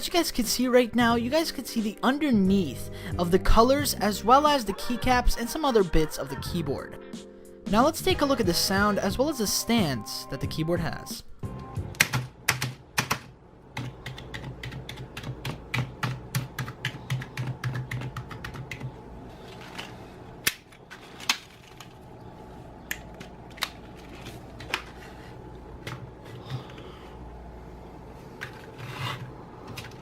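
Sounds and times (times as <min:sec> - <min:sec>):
keyboard typing: 0:11.9 - 0:22.0.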